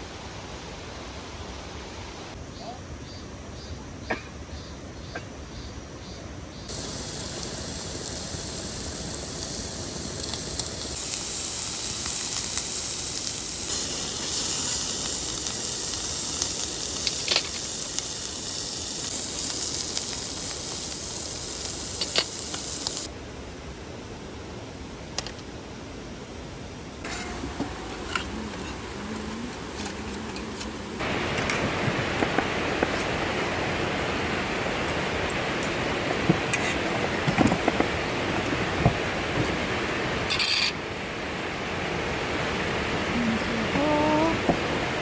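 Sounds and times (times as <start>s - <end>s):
food sizzling on a pan: 6.7s - 23.1s.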